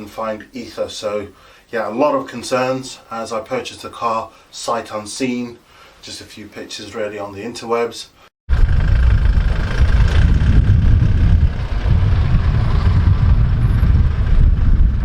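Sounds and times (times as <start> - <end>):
vehicle engine rumbling: 8.5 - 15.0.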